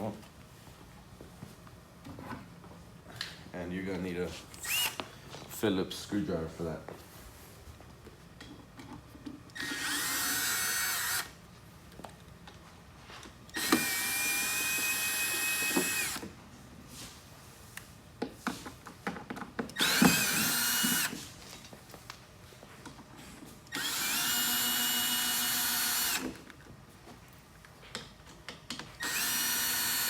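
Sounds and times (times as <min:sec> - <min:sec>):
power screwdriver motor whine: 0:04.6 - 0:05.0, 0:09.5 - 0:11.3, 0:13.5 - 0:16.3, 0:19.8 - 0:21.2, 0:23.7 - 0:26.4, 0:29.0 - 0:30.0.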